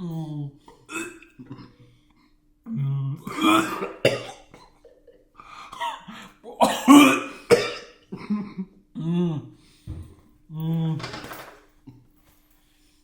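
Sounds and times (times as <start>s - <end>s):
man coughing and gagging: 3.3s - 8.8s.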